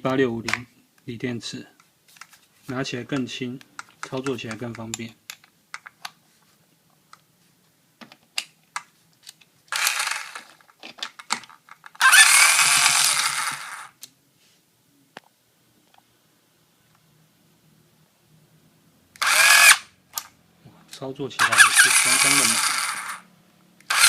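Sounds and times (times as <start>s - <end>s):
cordless drill running: 9.8s - 10.5s, 12.0s - 13.9s, 19.2s - 19.8s, 21.4s - 23.2s.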